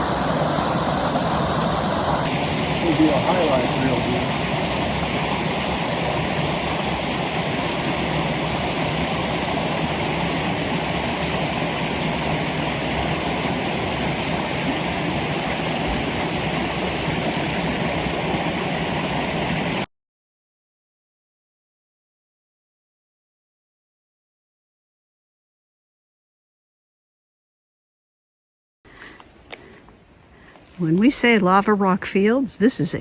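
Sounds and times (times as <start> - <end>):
waterfall roaring: 0.0 - 19.8.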